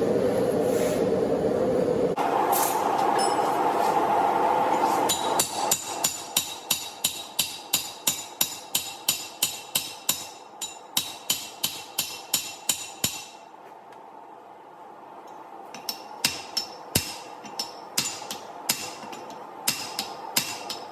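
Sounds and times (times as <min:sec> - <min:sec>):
steady hum: 0:00.0 - 0:20.9
hammer striking steel on anvil: 0:02.6 - 0:03.7, 0:04.9 - 0:13.5, 0:15.7 - 0:20.9.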